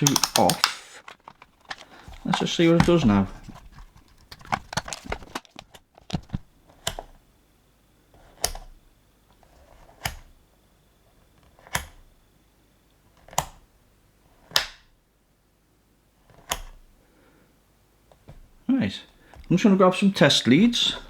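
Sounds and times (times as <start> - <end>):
rotary switch clicking: 0.0 - 1.8.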